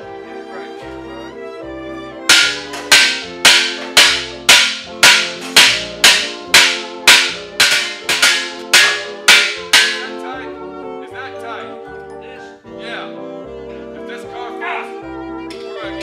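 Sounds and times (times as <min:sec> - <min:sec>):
sharp percussive hits on a beat: 0:02.3 - 0:10.3.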